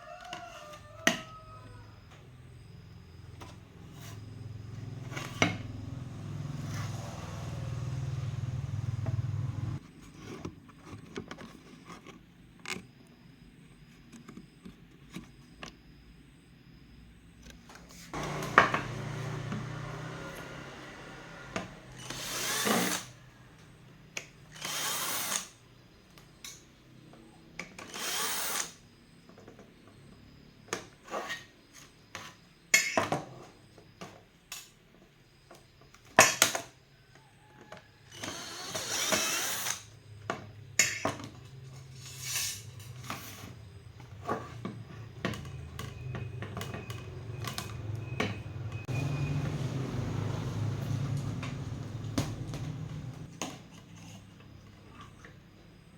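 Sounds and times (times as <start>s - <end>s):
small power drill running: 18.1s - 23.2s, 24.5s - 25.6s, 27.8s - 28.8s, 38.1s - 40.0s.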